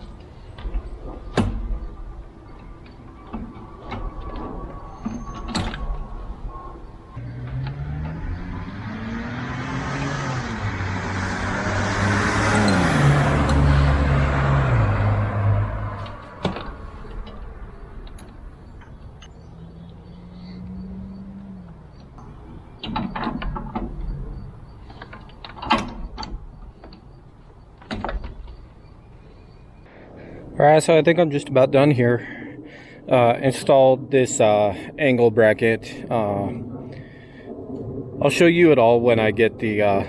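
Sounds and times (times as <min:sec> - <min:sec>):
sharp clicks and knocks: 0:00.0 - 0:06.2, 0:16.0 - 0:19.3, 0:21.7 - 0:28.7
vehicle driving past: 0:05.9 - 0:22.8.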